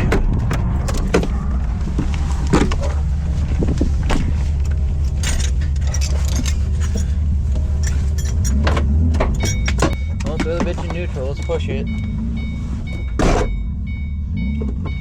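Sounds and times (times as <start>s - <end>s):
low vehicle rumble: 0.0s - 15.0s.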